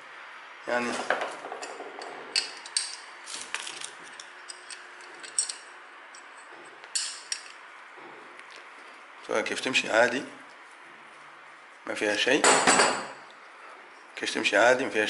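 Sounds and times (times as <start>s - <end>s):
small metallic clicks and clinks: 4.1s - 7.6s.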